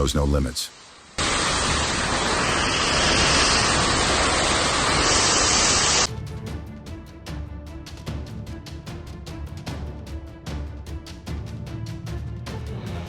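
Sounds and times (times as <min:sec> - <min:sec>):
storm wind rushing: 0:00.8 - 0:06.1
background music with beat: 0:06.1 - 0:13.0.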